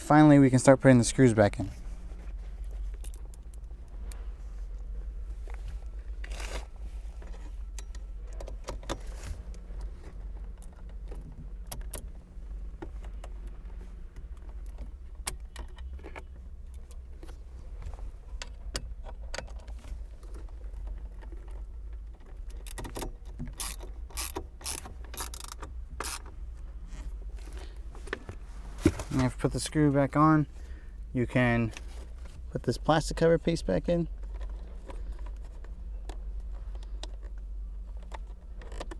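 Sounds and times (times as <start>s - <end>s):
hand ratchet clicking: 22.7s - 26.3s.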